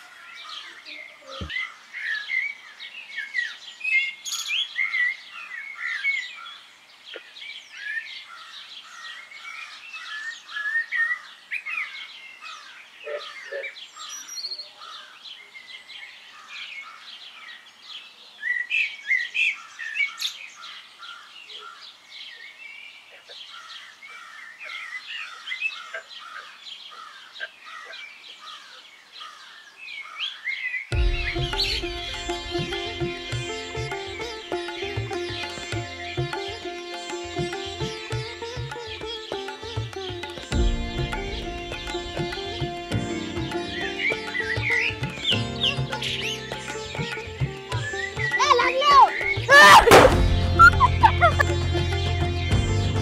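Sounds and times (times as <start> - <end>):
small birds chirping: 0.0 - 49.8.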